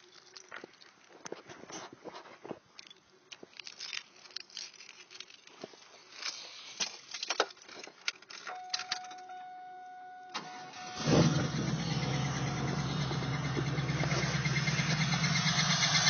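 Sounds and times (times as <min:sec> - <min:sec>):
handling rustling: 0:00.0 - 0:09.4.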